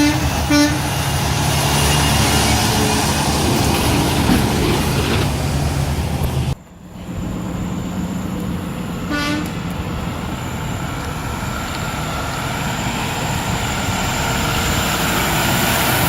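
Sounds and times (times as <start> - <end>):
traffic noise: 0.0 - 16.0
truck engine running: 0.0 - 16.0
short horn toot: 9.1 - 9.6.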